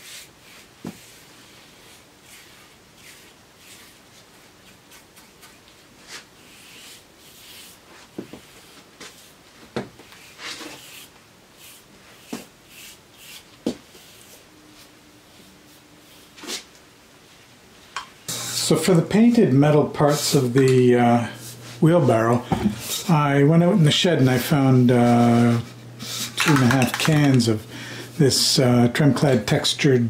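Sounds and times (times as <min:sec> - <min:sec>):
paintbrush swishing strokes: 0:00.0 - 0:17.5.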